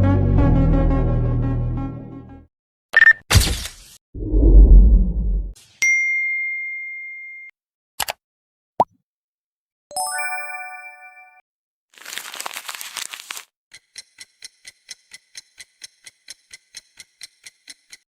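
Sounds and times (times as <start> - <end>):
bright chime ringing: 9.9 - 11.4
sharp clock-like ticks: 13.7 - 18.0.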